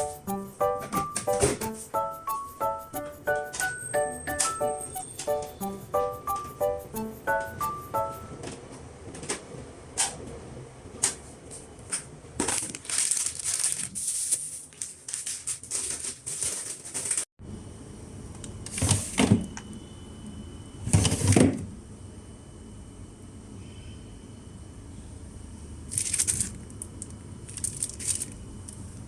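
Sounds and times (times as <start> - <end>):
faint steady high tone: 2.3 - 8.4
rubbing and rustling: 12.5 - 17.3.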